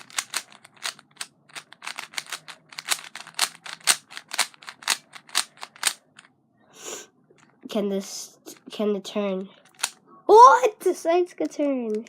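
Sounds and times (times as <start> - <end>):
plastic puzzle cube clicking: 0.0 - 6.3, 9.6 - 10.0, 11.5 - 12.0.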